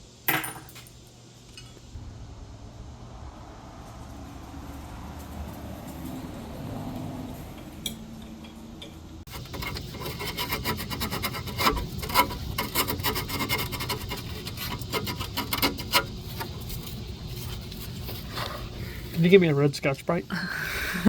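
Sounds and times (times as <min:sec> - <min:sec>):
tool scraping metal: 0:09.3 - 0:19.2.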